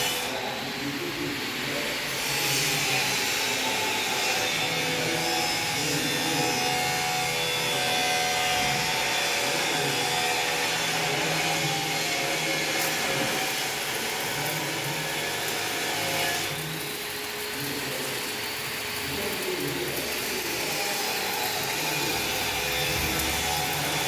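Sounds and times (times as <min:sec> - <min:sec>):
welding equipment hiss and hum: 0:00.0 - 0:24.0.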